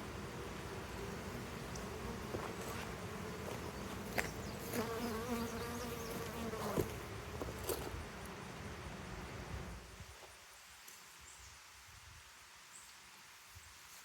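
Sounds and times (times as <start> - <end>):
bees buzzing: 0.0 - 9.8.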